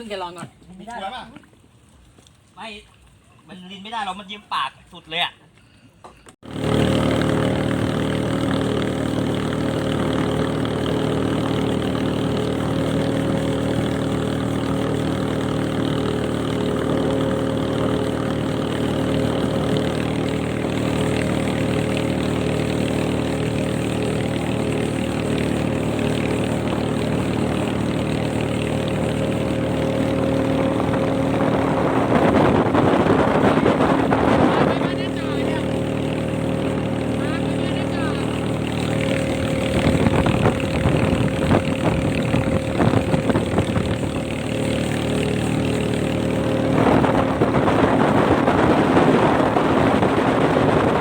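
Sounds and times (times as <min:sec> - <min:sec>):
motorboat engine running: 0:06.3 - 0:51.0
rushing wind or water: 0:06.4 - 0:51.0.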